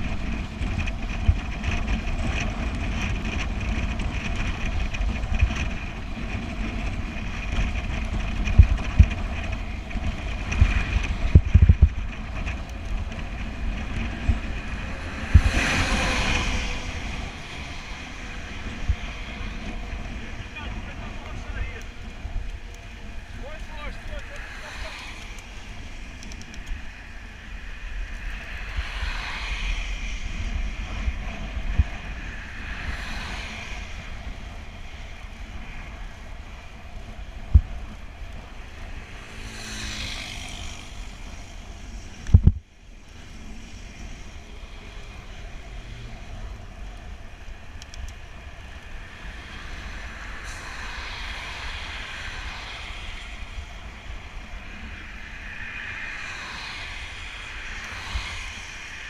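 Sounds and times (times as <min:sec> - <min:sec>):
wind rumble on microphone: 0:00.0 - 0:59.0
tyres hissing on wet road: 0:23.1 - 0:25.6, 0:28.6 - 0:30.2, 0:32.2 - 0:34.2, 0:38.6 - 0:42.3, 0:48.4 - 0:59.0.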